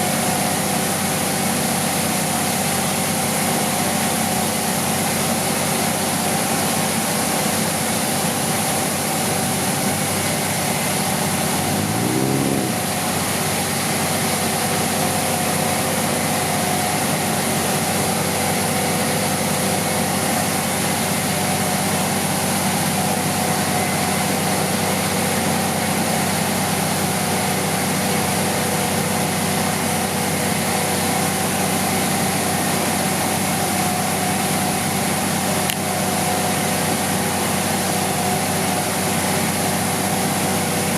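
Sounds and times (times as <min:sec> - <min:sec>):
vehicle engine idling: 0:00.0 - 0:40.9
short rising whine: 0:09.5 - 0:14.1.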